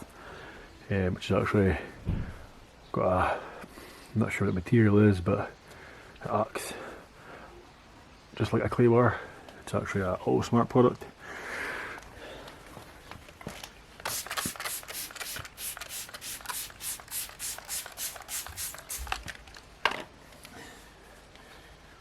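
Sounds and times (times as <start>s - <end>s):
cloth rubbing on car paint: 14.1s - 19.1s.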